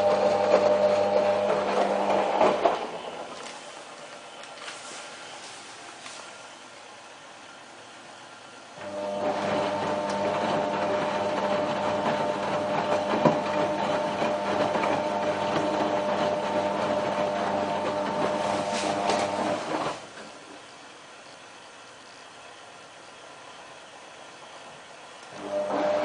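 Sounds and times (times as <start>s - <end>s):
washing machine motor whining: 0.0s - 4.0s, 8.8s - 20.2s, 25.2s - 26.0s.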